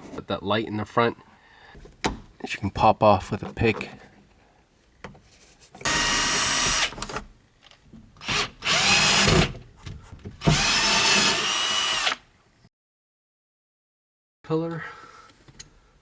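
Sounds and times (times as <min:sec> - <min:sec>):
power drill motor whining: 0:05.8 - 0:07.0, 0:08.2 - 0:09.6, 0:10.4 - 0:12.2.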